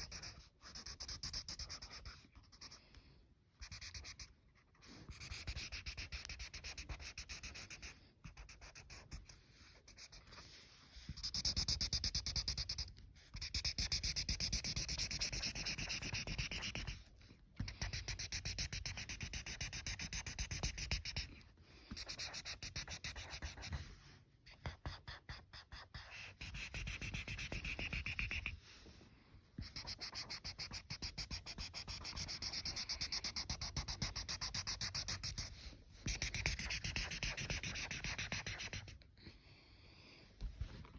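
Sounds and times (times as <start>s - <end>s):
drawing tool scratching on paper: 5.1s - 17.1s, 17.8s - 21.3s, 22.0s - 24.0s, 24.7s - 28.6s, 29.6s - 39.0s.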